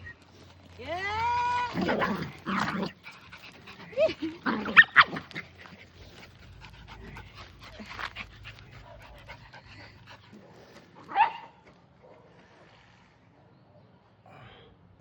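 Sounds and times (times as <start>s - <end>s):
dog panting: 3.0s - 4.4s, 5.4s - 10.9s.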